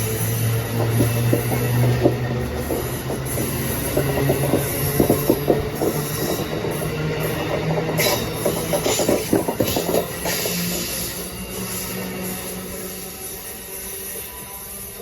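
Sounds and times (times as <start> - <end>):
wheels clicking over track: 0.0 - 11.0
train low drone: 0.0 - 15.0.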